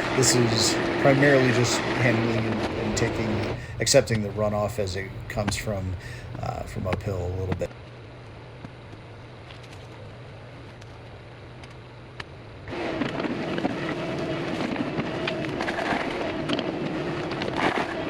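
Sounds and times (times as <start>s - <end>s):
tractor engine: 0.0s - 7.7s.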